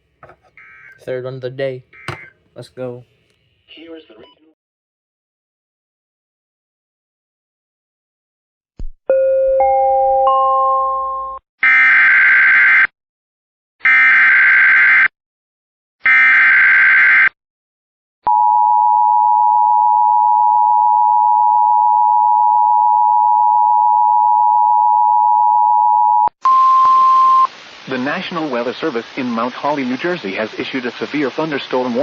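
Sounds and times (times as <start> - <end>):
two-tone attention signal: 2.0 - 2.3.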